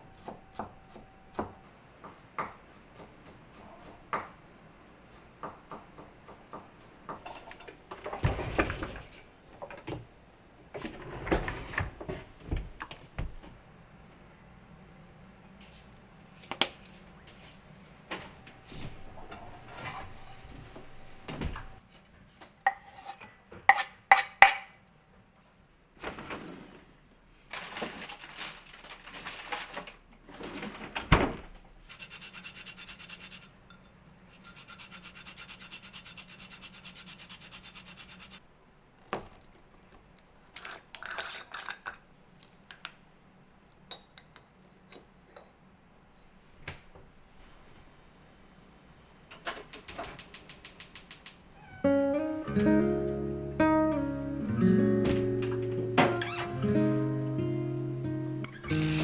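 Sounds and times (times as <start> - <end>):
steady hiss: 49.8 - 51.5, 58.7 - 59.0.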